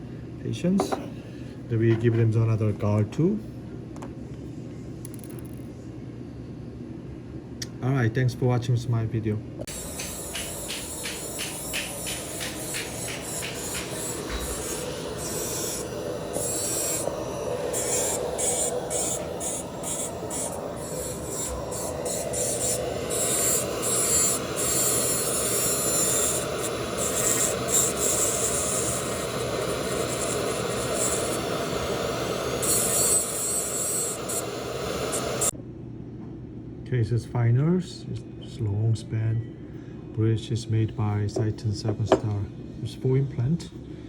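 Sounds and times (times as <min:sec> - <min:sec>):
abrasive grinding rasp: 0:09.7 - 0:35.5
high hissing flares: 0:09.7 - 0:35.5.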